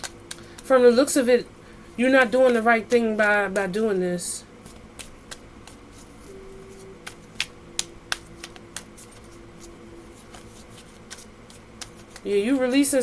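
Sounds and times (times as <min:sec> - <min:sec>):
cards being shuffled and laid down: 0:04.6 - 0:12.3.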